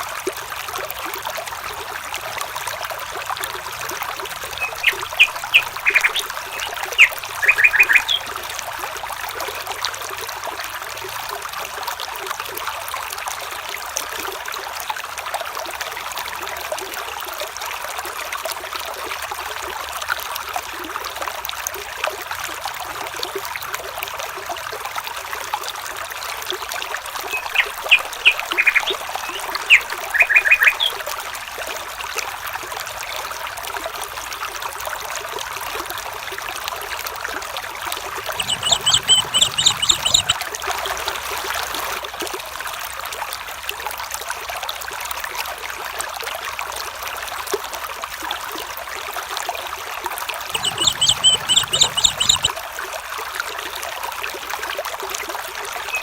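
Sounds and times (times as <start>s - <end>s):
water trickling: 0.0s - 56.0s
bird chirping: 4.4s - 8.3s, 27.2s - 31.0s, 38.2s - 40.4s, 50.6s - 52.5s.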